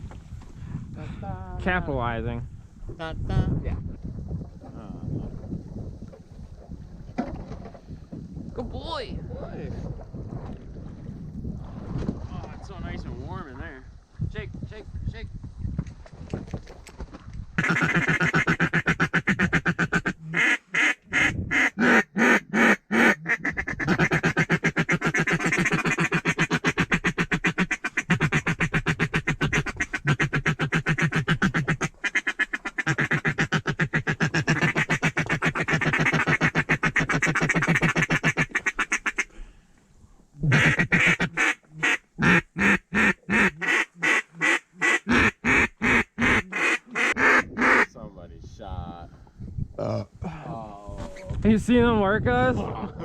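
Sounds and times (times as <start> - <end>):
duck call quacks and chatter: 17.6 - 39.3, 40.4 - 47.9.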